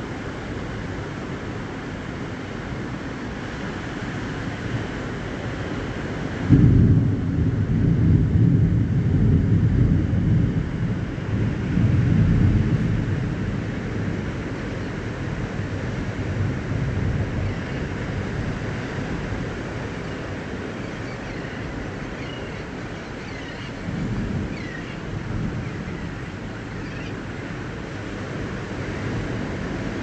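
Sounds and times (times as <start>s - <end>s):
wind: 0.0s - 30.0s
thunder rumbling: 5.9s - 29.6s.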